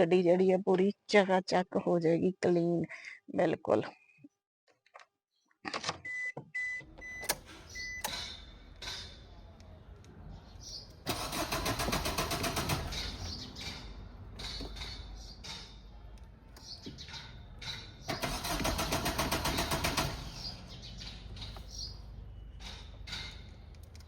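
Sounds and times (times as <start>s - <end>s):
engine cranking on starter: 11.0s - 13.3s, 18.1s - 20.6s.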